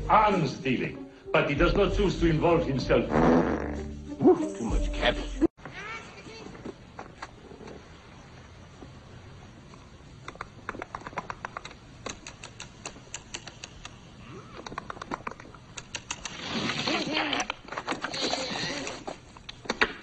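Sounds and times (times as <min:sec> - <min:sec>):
sharp clicks: 0:10.2 - 0:16.4.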